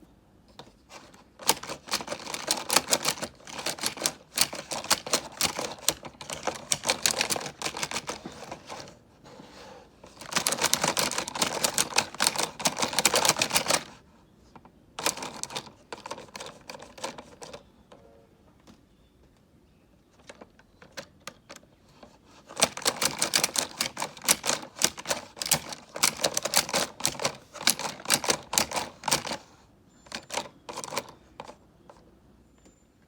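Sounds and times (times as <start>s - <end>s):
plastic figures clacking: 1.4s - 9.0s, 10.1s - 14.0s, 15.0s - 17.6s, 22.5s - 29.4s, 30.1s - 31.6s.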